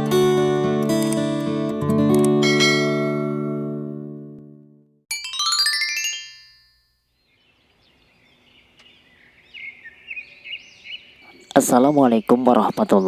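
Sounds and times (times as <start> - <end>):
strummed chord: 0.0 - 6.2
rising run of chime-like notes: 2.4 - 3.8, 5.1 - 7.0
birds chirping: 7.1 - 13.0.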